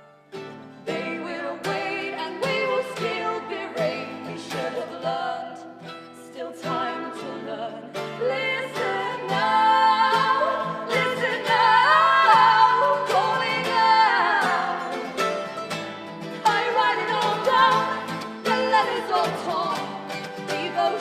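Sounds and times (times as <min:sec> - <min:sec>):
strummed acoustic guitar: 0:00.0 - 0:21.0
people singing: 0:00.6 - 0:21.0.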